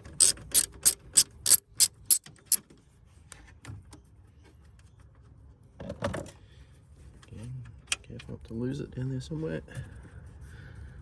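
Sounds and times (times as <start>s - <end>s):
socket ratchet clicking: 0.0s - 2.6s.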